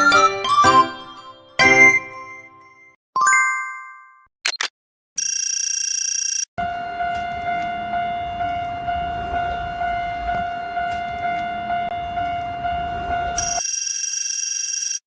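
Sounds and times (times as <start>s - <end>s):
railroad crossing alarm dings: 6.3s - 15.0s.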